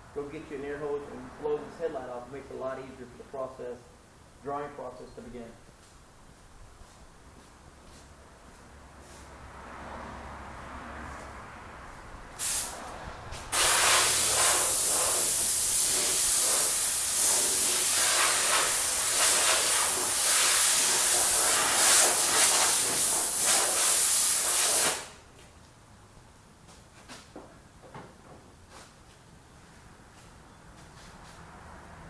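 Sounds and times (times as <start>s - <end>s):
compressed air hissing from blow gun: 12.4s - 12.8s, 13.5s - 25.2s.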